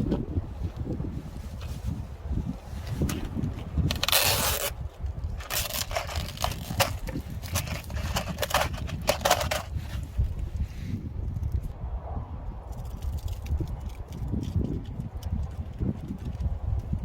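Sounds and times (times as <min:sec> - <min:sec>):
crackles of fabric or plastic: 0:00.0 - 0:10.7
wind buffeting microphone: 0:00.0 - 0:17.0
rustling: 0:00.6 - 0:10.8.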